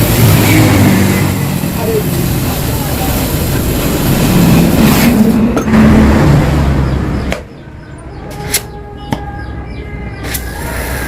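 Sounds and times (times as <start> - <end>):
motorcycle engine revving: 0.0 - 7.0.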